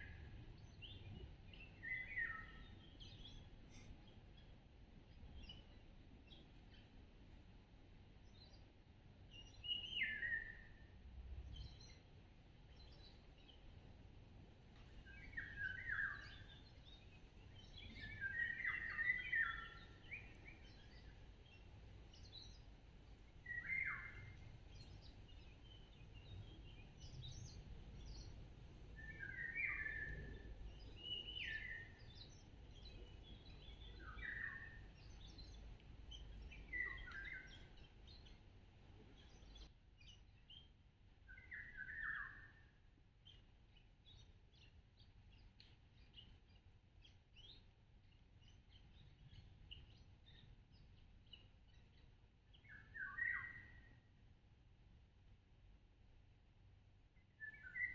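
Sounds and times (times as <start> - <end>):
songbird chirping: 0.0 - 54.3, 56.6 - 57.9.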